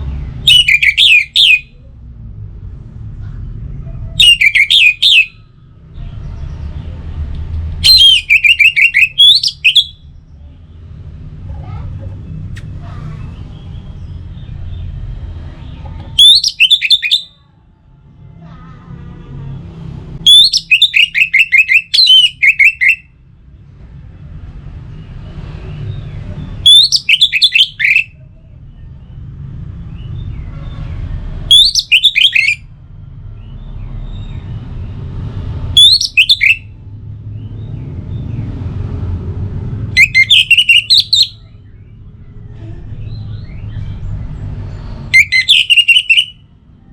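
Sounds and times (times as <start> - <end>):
thrush singing whistled notes: 0.3 - 1.8, 4.2 - 5.6, 7.8 - 10.1, 16.2 - 17.4, 20.2 - 23.1, 26.6 - 28.2, 31.5 - 32.7, 35.8 - 36.8, 40.0 - 41.9, 45.0 - 46.6.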